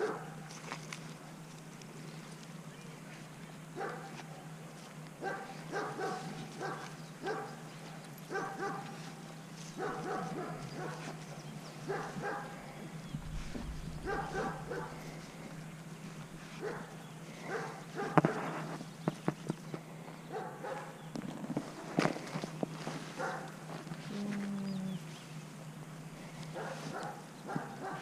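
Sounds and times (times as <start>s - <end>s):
dog barking: 0.0s - 0.4s, 3.8s - 4.2s, 5.2s - 7.6s, 8.3s - 9.0s, 9.8s - 11.2s, 11.9s - 12.6s, 13.5s - 15.2s, 16.6s - 18.4s, 20.3s - 21.0s, 23.2s - 23.5s, 26.5s - 28.0s.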